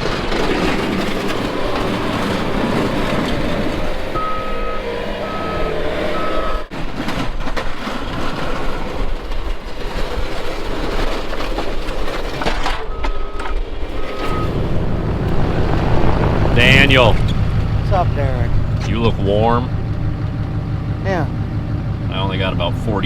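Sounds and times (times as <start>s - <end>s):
heavy engine noise: 0.0s - 23.0s
backup alarm beeping: 0.9s - 6.7s, 12.9s - 22.8s.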